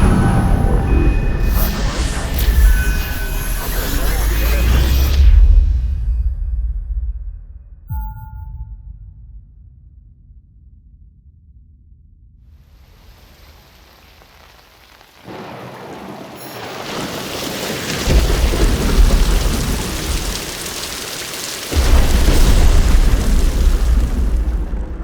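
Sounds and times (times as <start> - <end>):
rain: 0.0 - 5.4, 12.6 - 25.0
rolling thunder: 14.4 - 25.0.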